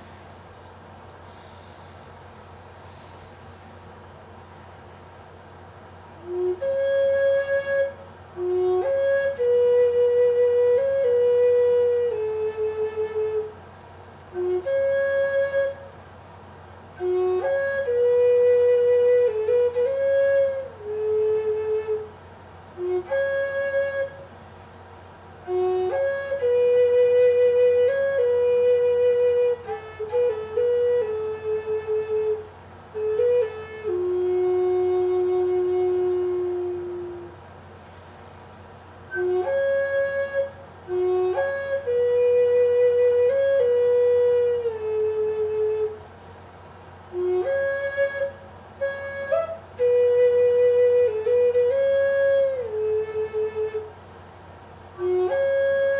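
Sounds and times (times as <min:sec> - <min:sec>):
player breathing: 0:00.0 - 0:05.4, 0:37.8 - 0:38.8
flute slow melody: 0:06.1 - 0:16.1, 0:16.8 - 0:24.6, 0:25.4 - 0:46.1, 0:47.0 - 0:54.0, 0:54.9 - 0:55.9.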